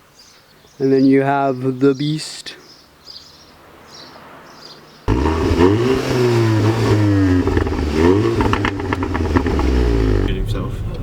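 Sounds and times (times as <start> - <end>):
car engine revving: 5.1 - 11.0.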